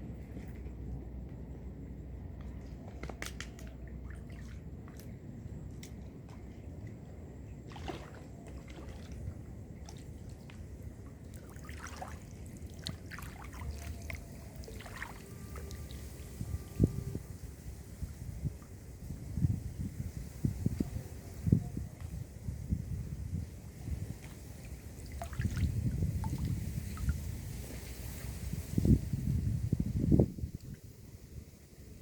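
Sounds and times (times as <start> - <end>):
steady low rumble: 0.0 - 32.0
water sloshing and dripping: 2.3 - 17.2, 23.8 - 28.6.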